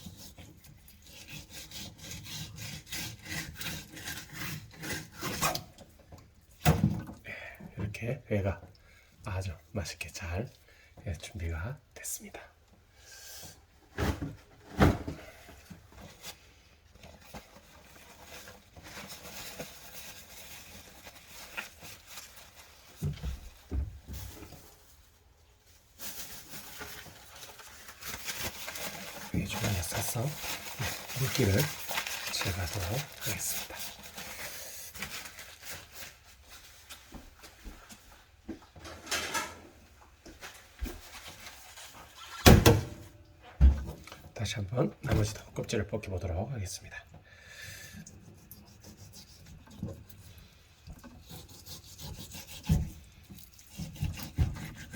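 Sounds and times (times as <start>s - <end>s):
fish fillets scraping and rustling: 0.0s - 5.9s, 15.2s - 38.4s, 48.0s - 54.9s.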